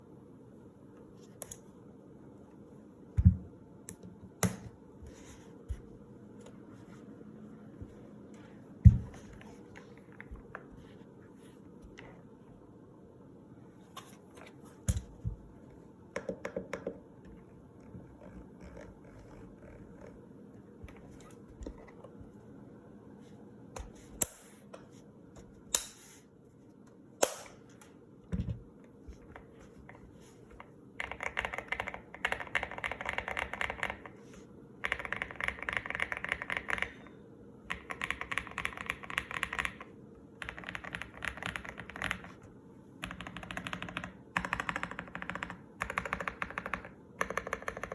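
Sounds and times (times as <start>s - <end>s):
mechanical keyboard typing: 31.0s - 34.2s, 34.8s - 37.1s, 37.7s - 42.4s, 43.0s - 47.9s.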